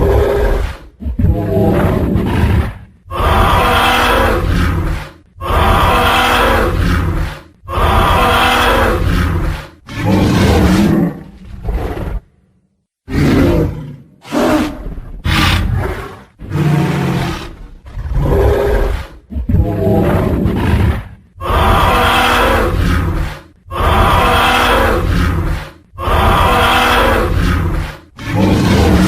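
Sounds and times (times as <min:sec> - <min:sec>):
dinosaur roars: 0:00.0 - 0:12.3, 0:13.1 - 0:29.0
low growl: 0:13.1 - 0:29.0.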